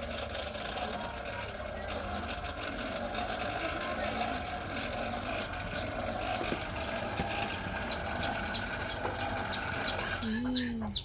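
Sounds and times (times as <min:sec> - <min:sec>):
low motor hum: 0:00.0 - 0:10.5
chicks peeping: 0:06.1 - 0:11.0.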